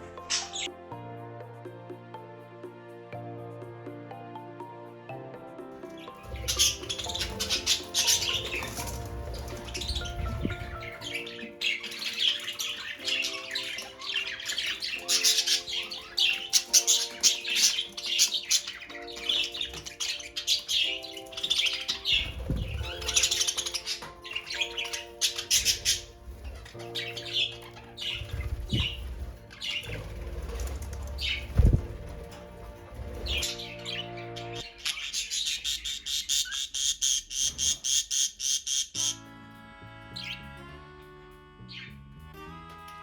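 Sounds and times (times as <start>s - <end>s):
budgerigar chattering and squawking: 0.0s - 0.7s, 6.1s - 30.0s, 33.3s - 39.3s
background music with held chords: 0.0s - 36.2s, 39.0s - 43.0s.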